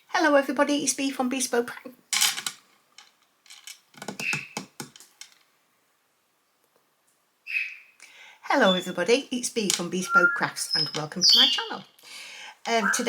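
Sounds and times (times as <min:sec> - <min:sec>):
small objects clicking and tapping: 0:02.2 - 0:05.5.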